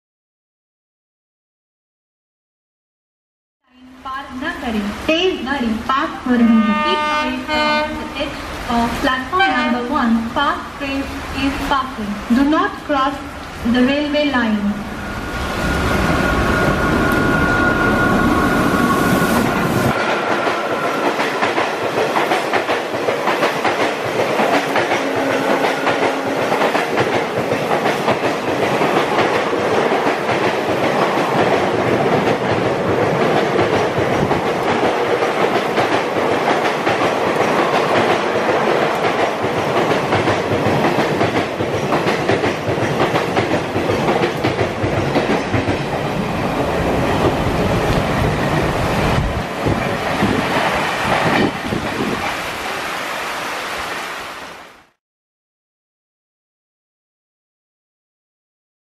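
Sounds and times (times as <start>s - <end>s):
two-tone locomotive horn: 6.4s - 8.2s, 9.4s - 9.9s, 24.9s - 26.5s
wheels clickety-clack over rail joints: 19.9s - 52.3s.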